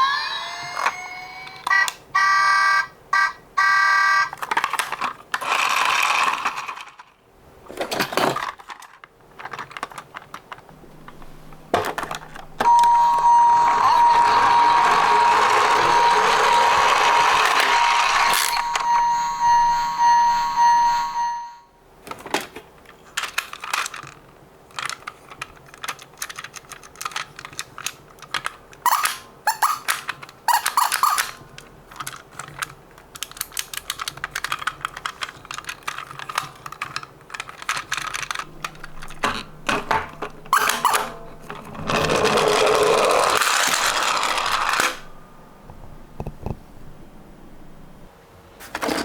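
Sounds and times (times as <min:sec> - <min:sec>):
toy cars clicking together: 0:04.3 - 0:07.2, 0:22.2 - 0:39.5, 0:41.8 - 0:45.0
toy cars rattling: 0:04.3 - 0:10.7, 0:14.0 - 0:19.7, 0:22.2 - 0:45.1.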